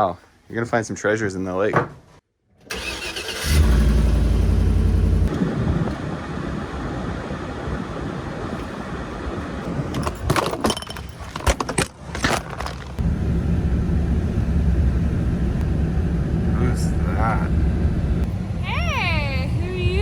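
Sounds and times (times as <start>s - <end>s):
vehicle engine starting and running: 2.7s - 6.3s, 13.0s - 18.4s.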